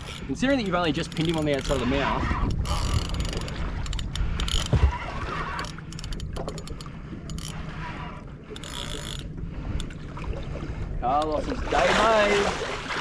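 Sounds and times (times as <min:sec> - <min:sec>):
fishing reel ratcheting: 0:00.0 - 0:04.8, 0:05.5 - 0:07.8, 0:08.6 - 0:09.3.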